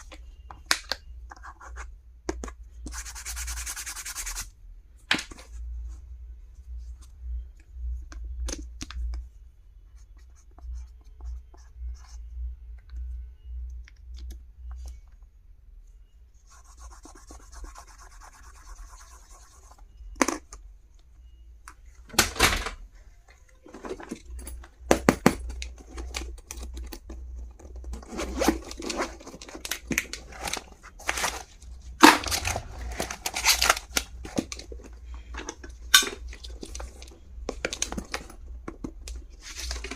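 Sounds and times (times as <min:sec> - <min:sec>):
packaging rustling and tearing: 0:28.0 - 0:34.8.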